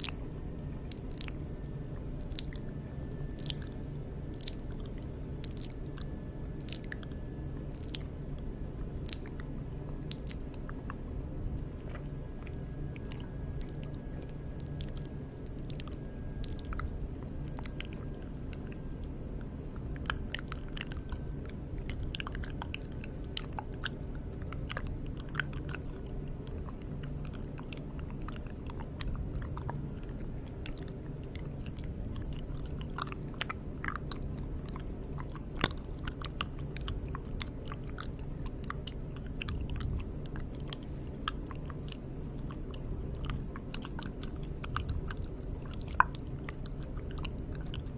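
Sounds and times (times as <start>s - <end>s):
wet mouth clicks and smacks: 0.0s - 47.9s.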